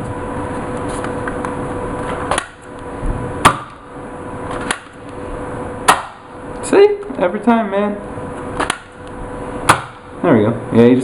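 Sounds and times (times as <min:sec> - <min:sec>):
loud sharp plastic snap: 0:02.3 - 0:02.7, 0:04.6 - 0:05.0, 0:08.6 - 0:09.0.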